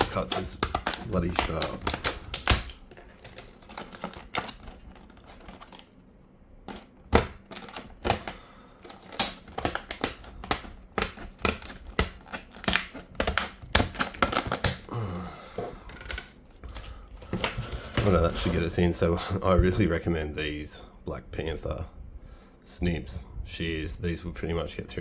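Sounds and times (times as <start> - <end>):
snips cutting hard plastic: 0.0 - 5.8, 6.7 - 14.9.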